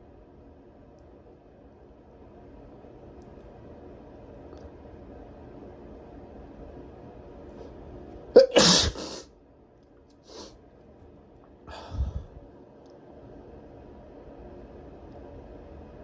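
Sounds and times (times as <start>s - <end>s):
person sneezing: 8.4s - 9.3s
breathy sounds: 11.7s - 12.4s.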